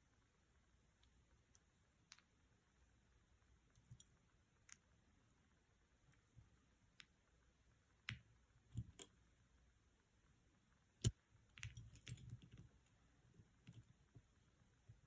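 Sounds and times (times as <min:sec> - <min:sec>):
small clicks and knocks: 0:08.0 - 0:09.2, 0:11.0 - 0:15.0.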